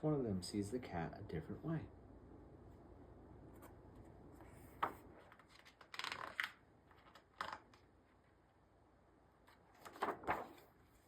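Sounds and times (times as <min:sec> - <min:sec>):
book pages rustling: 0:03.5 - 0:07.9, 0:09.4 - 0:11.0.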